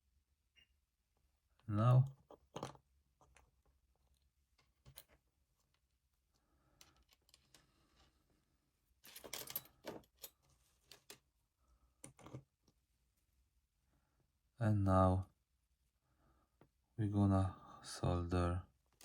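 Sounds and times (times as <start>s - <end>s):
small parts and tools rattling: 6.7s - 8.1s, 9.0s - 11.3s.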